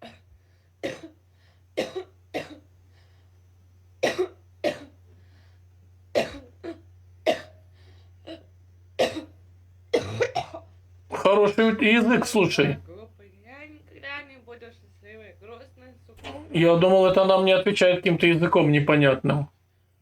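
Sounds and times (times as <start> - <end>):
woman coughing: 0.0 - 1.2, 1.8 - 2.7, 4.0 - 5.0, 6.1 - 7.6, 8.2 - 10.7, 16.2 - 16.5
steady low hum: 0.0 - 20.0.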